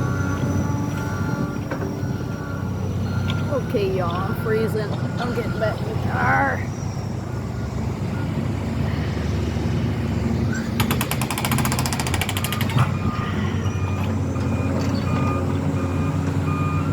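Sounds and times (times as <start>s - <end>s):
reversing beeper: 0.0s - 10.9s, 11.5s - 16.9s
construction machinery engines running: 0.0s - 16.9s
jackhammer hammering: 10.6s - 12.9s.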